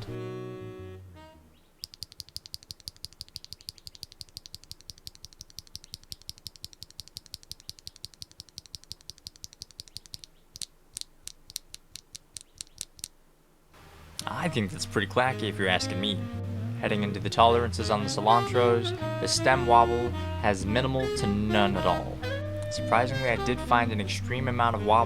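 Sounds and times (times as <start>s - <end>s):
mechanical keyboard typing: 1.8s - 10.7s.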